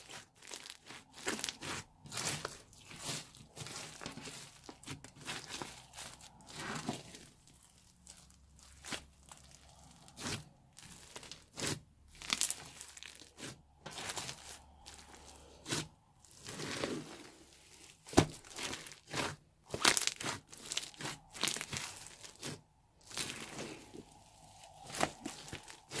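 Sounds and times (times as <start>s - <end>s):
hands squishing sticky slime: 0.0s - 26.0s
slime crackles and pops: 18.0s - 23.8s.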